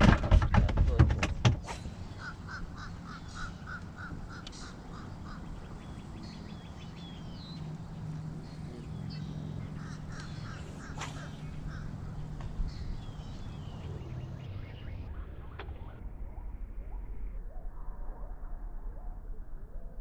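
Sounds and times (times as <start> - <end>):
low steady hum: 0.0 - 20.0
other birds chirping: 1.5 - 15.1.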